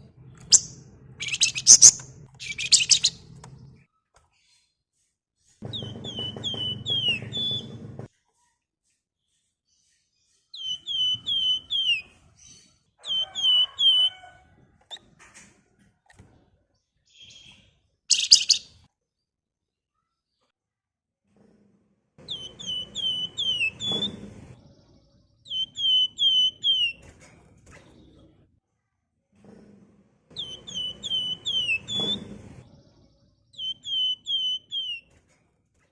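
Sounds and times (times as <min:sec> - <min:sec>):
bird singing whistled notes: 0:00.5 - 0:03.2, 0:10.6 - 0:12.0, 0:18.1 - 0:18.7, 0:22.3 - 0:24.0, 0:25.4 - 0:27.0, 0:30.4 - 0:32.1, 0:33.5 - 0:35.1
songbird whistled notes: 0:33.6 - 0:35.0.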